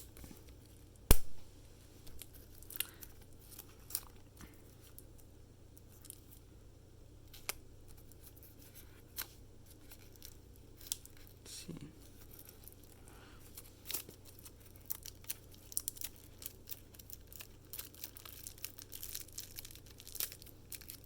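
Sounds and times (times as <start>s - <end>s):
plastic shrink-wrap crinkling: 2.0s - 5.2s, 9.1s - 11.4s, 12.1s - 21.0s.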